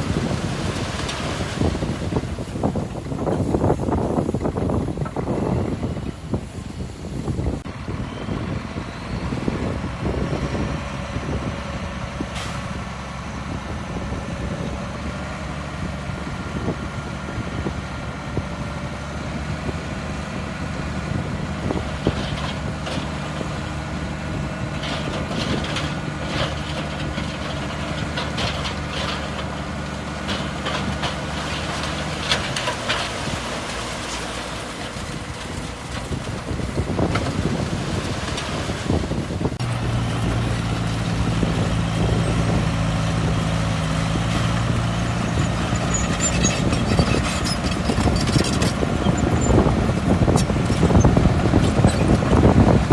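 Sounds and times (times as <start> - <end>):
bulldozer diesel engine running: 0.0 - 52.9
metallic clanks and rattles: 45.2 - 49.7.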